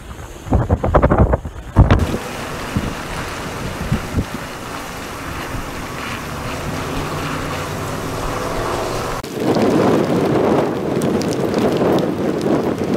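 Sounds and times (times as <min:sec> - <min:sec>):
rain: 0:00.0 - 0:12.9
wind: 0:00.0 - 0:12.9.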